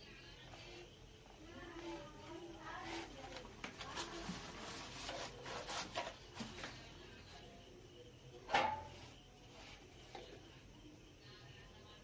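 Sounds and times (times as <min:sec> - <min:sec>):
rubbing and scraping on bench: 0:01.8 - 0:06.7.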